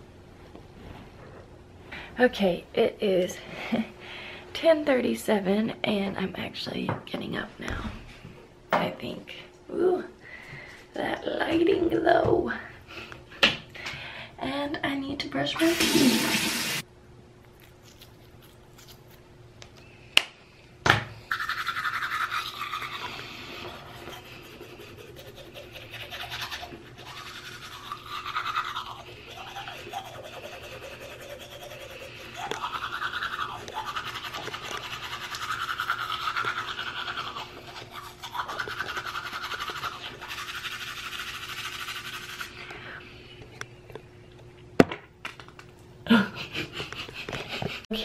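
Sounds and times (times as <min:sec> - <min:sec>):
toothbrush scrubbing teeth: 0:21.3 - 0:42.6.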